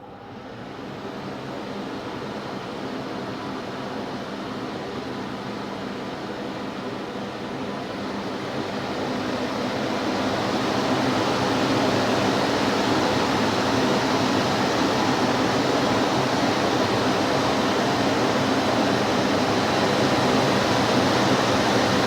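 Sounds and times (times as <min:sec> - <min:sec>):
vacuum cleaner running: 0:10.0 - 0:22.0.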